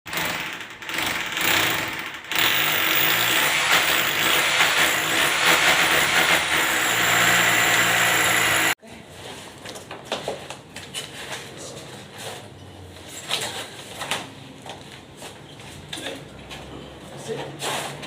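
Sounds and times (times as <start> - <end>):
machine running: 0.1 - 8.8.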